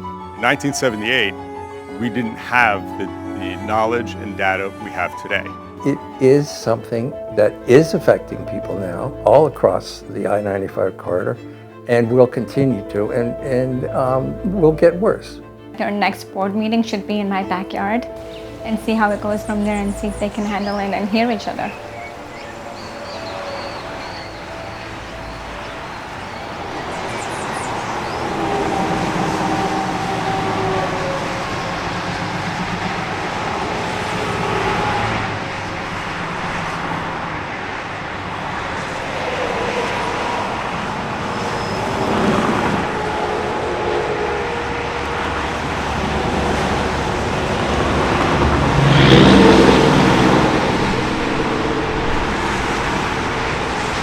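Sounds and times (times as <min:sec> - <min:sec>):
highway traffic: 0:16.9 - 0:54.0
heavy vehicle engine hum: 0:17.0 - 0:54.0.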